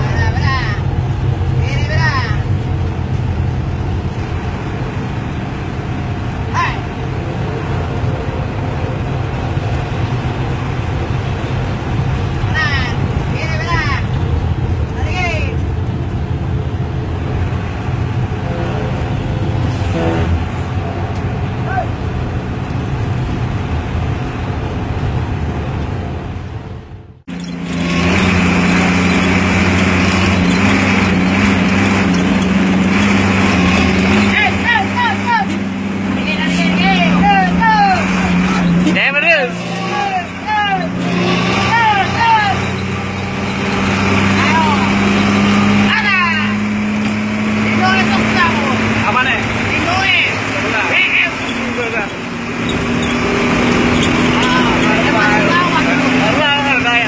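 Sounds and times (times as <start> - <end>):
bus diesel engine drone: 0.0 - 57.0.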